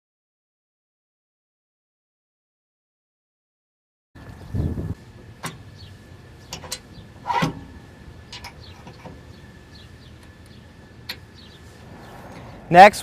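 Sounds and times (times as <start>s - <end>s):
tractor engine running: 4.2s - 12.6s
metallic clicks and knocks: 6.5s - 9.2s.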